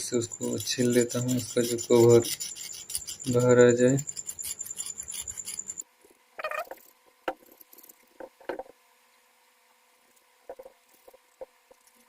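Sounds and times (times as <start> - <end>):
blade scraping wire insulation: 0.0 - 5.8.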